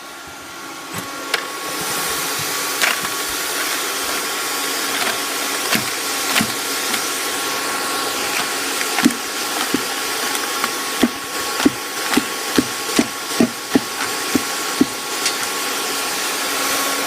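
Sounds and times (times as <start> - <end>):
hair dryer whirring: 0.0 - 17.0
poker knocking on metal cans: 5.0 - 7.2, 8.3 - 15.5.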